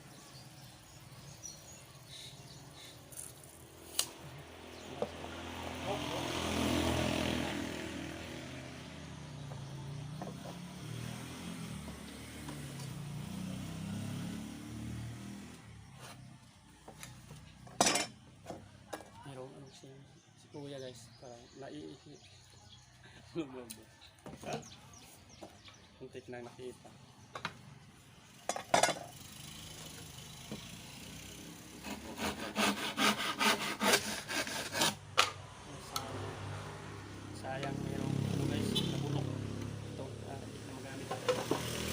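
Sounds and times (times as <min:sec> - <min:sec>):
hand saw cutting wood: 0:31.6 - 0:35.4.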